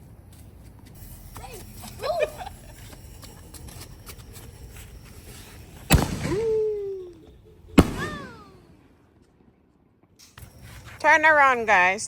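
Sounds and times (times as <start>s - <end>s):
firework bangs: 5.9s - 6.8s, 7.8s - 8.9s
falling whistle tone: 5.9s - 7.2s.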